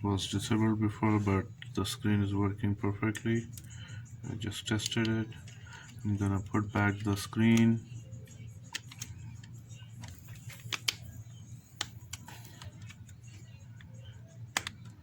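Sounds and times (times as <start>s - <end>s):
low steady hum: 0.0s - 15.0s
small clicks and taps: 8.6s - 11.1s, 11.8s - 13.1s, 14.5s - 15.0s.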